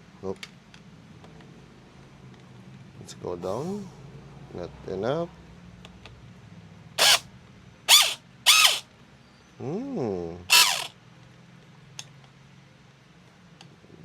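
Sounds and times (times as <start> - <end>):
electric motor whirring: 7.0 - 7.2, 7.9 - 8.8, 10.5 - 10.9.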